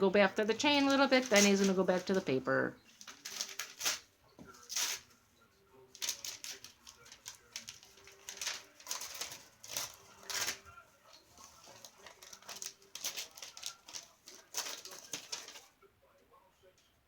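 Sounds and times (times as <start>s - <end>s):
bird tearing paper: 0.4s - 2.3s, 2.9s - 5.1s, 6.0s - 10.7s, 11.3s - 15.7s.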